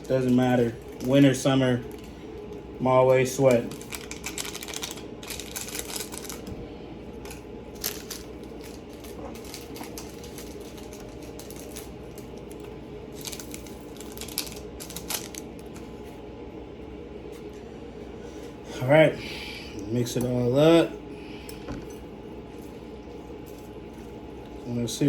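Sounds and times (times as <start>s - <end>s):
steady low hum: 0.0s - 25.0s
food packets and utensils clicking: 3.4s - 6.5s, 7.2s - 15.8s.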